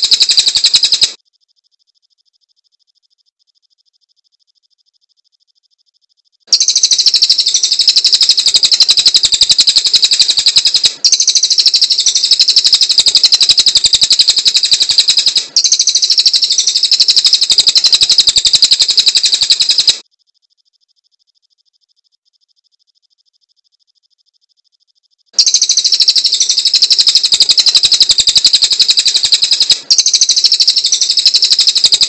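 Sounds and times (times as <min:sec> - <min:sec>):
songbird chattering trill: 0:00.0 - 0:01.2, 0:06.5 - 0:20.0, 0:25.4 - 0:32.0.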